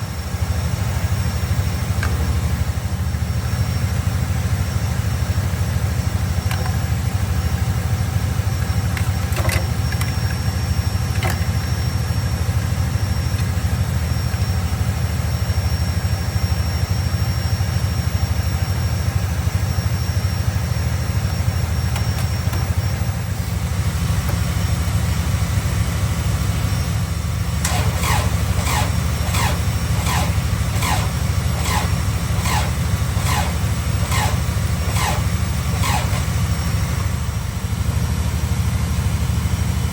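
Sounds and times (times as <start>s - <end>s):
vehicle engine idling: 0.0s - 39.9s
regular ticking: 27.6s - 36.3s.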